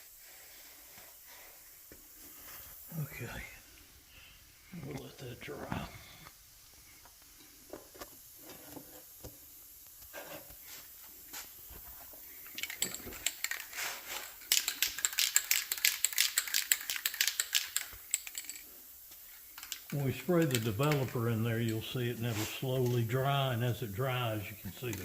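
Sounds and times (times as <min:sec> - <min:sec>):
aerosol can ball rattling: 0:12.4 - 0:18.7, 0:19.5 - 0:21.9.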